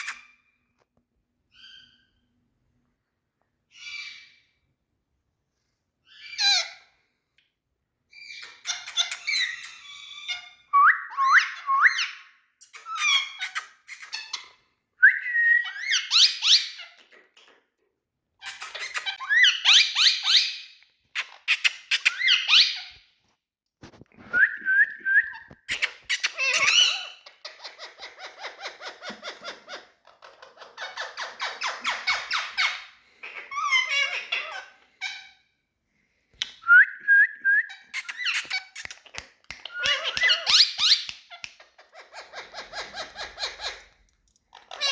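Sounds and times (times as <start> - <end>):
parrot calling: 25.7 - 35.4, 37.9 - 44.9.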